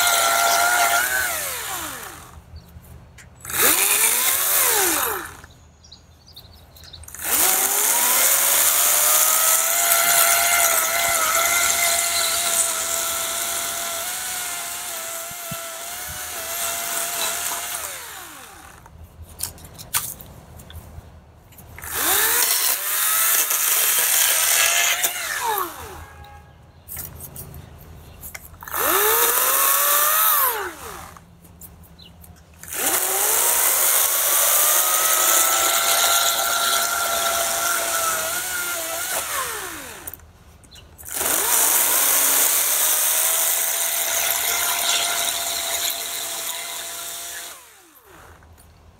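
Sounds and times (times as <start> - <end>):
chainsaw cutting a log: 0.0 - 2.4, 3.5 - 5.5, 7.1 - 18.9, 21.8 - 26.0, 28.6 - 31.2, 32.7 - 40.2, 41.0 - 48.5.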